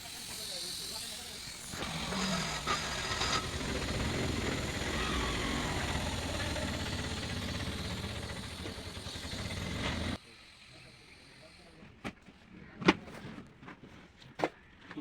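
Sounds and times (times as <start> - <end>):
engine running: 1.6 - 10.2.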